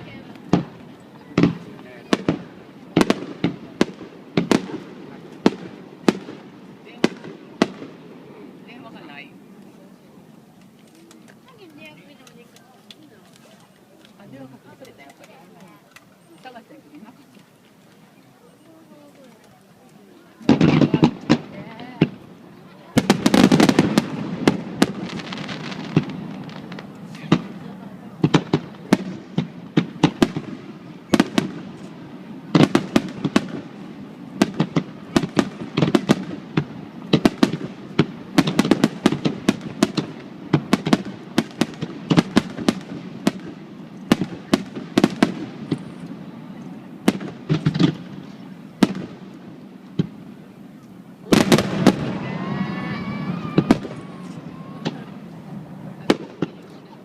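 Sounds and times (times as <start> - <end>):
fireworks cracking and banging: 0.0 - 57.0.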